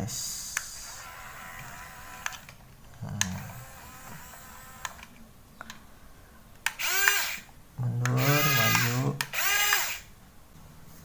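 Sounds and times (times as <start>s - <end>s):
toy gear motor whirring: 0.6s - 2.5s, 3.3s - 5.0s, 6.7s - 7.5s, 8.1s - 10.1s.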